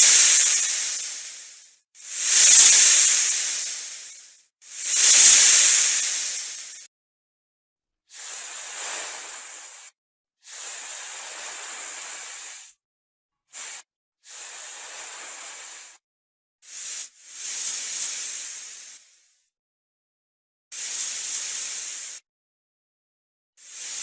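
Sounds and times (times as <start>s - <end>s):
snake hissing: 0.0s - 6.9s, 8.1s - 9.9s, 10.5s - 12.7s, 13.5s - 16.0s, 16.6s - 19.2s, 20.8s - 22.2s, 23.6s - 24.0s.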